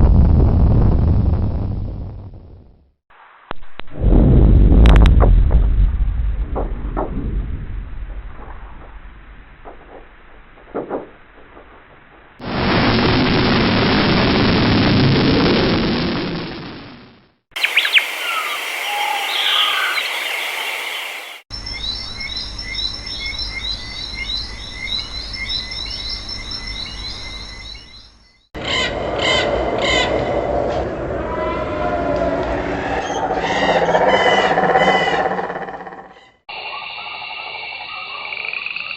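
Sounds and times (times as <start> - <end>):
birds chirping: 17.5 - 22.1, 32.8 - 36.4
chirps and gliding calls: 17.6 - 21.4, 28.7 - 38.9
quick repeated calls: 17.6 - 21.4
steady rushing noise: 17.6 - 21.4.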